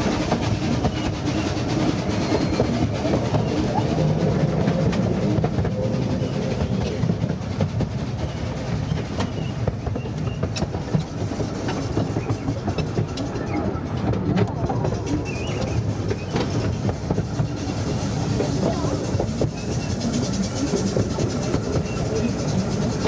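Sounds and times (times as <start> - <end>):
train carriage rumble: 0.0 - 23.0
wheels clicking on rails: 0.0 - 23.0.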